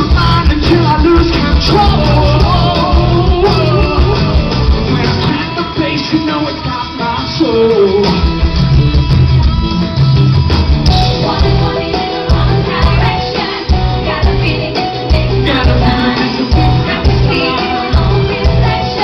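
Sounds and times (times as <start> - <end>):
heavy bass line: 0.0 - 5.5, 8.1 - 14.6
live stage music with singing: 0.0 - 19.0.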